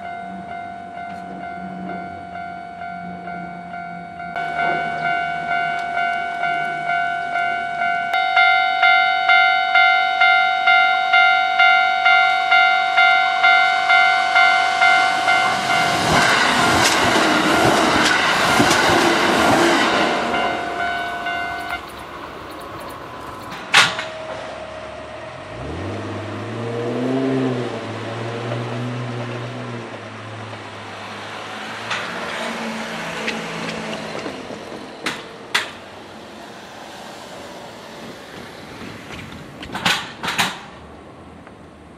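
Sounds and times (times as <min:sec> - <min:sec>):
level crossing warning bell: 0:00.0 - 0:25.8
electric train rushing past: 0:00.0 - 0:41.4.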